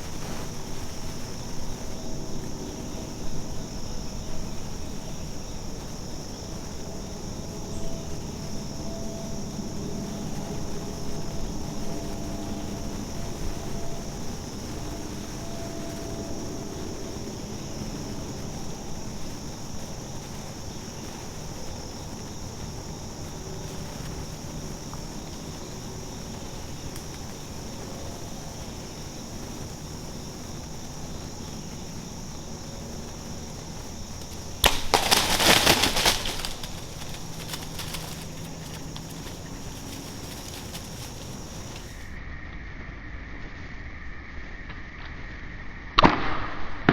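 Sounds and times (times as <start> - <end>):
wings flapping and thrashing: 32.8 - 42.1
bow release crack: 34.2 - 38.2.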